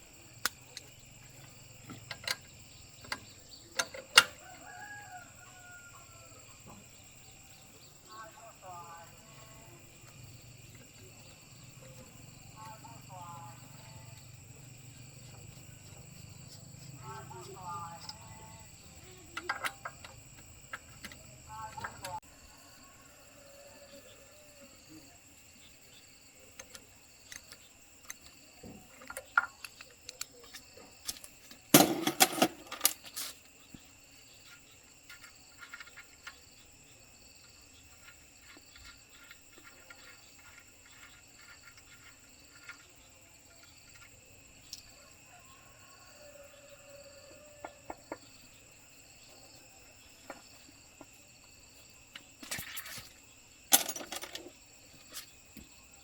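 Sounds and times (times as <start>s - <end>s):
insects trilling: 0.0s - 56.0s
metal tools clinking: 31.8s - 33.4s, 53.7s - 54.5s.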